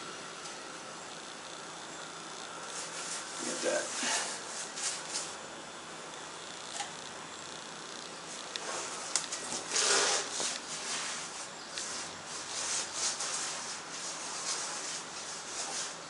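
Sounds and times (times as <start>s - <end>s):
rubbing swishes on tire: 8.6s - 16.0s.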